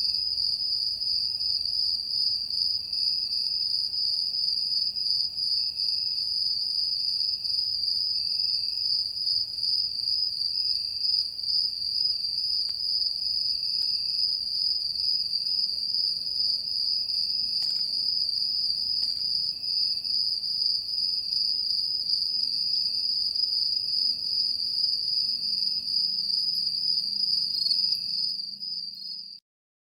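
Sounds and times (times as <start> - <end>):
crickets chirping: 0.0 - 29.4.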